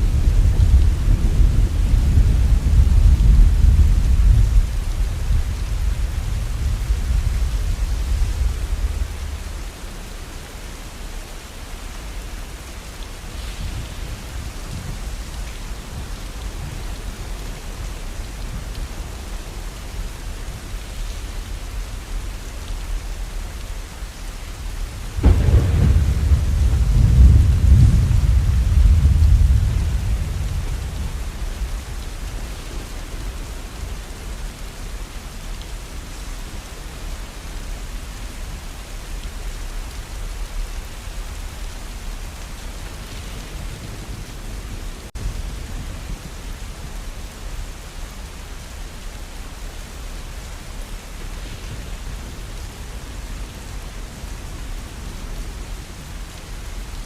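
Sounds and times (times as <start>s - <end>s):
thunder rumbling: 0.0s - 9.8s, 25.1s - 33.4s
steady falling rain: 0.0s - 57.0s.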